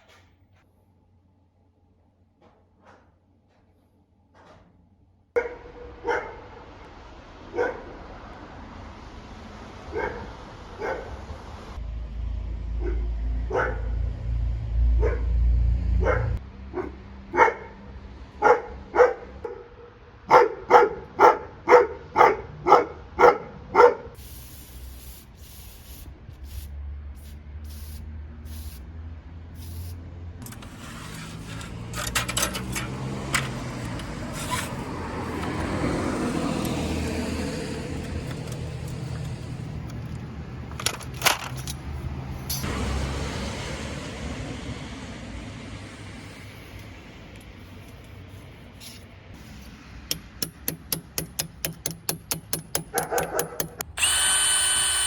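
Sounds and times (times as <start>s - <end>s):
dog barking: 5.4s - 6.6s, 7.5s - 7.9s, 9.9s - 11.2s, 12.8s - 14.0s, 15.0s - 15.4s, 16.0s - 17.8s, 18.4s - 24.2s, 52.9s - 53.8s
clicks and rustling: 38.0s - 42.6s.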